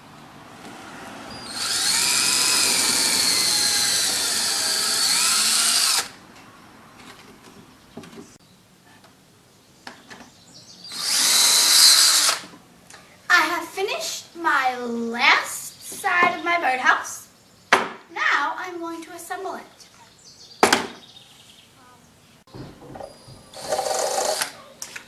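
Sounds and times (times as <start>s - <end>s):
power drill running: 1.2s - 6.2s, 10.9s - 12.5s, 23.5s - 24.6s.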